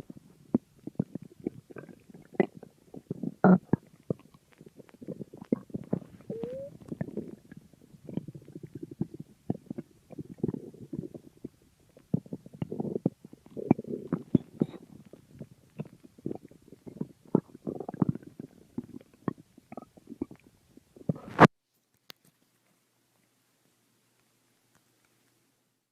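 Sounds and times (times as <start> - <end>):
stomach growling and gurgling: 0.0 - 21.5.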